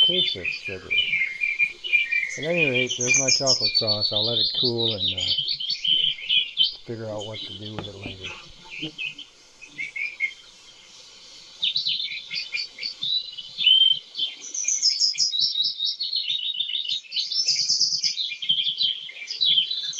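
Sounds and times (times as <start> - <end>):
small birds chirping: 0.0 - 19.9.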